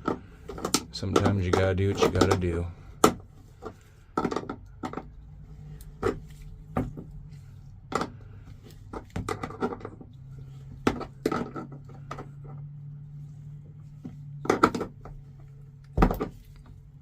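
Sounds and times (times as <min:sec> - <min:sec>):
hand tools knocking and clicking: 0:00.0 - 0:03.2
low steady hum: 0:00.0 - 0:17.0.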